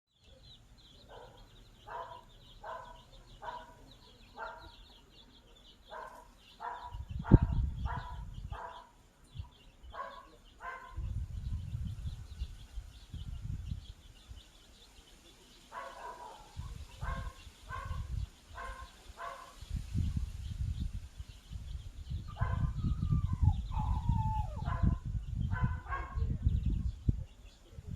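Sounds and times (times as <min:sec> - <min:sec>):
low rumbling: 0:19.8 - 0:27.9.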